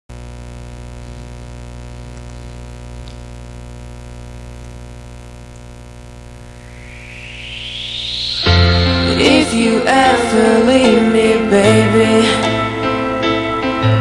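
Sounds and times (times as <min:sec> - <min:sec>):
low buzzy hum: 0:00.1 - 0:11.1.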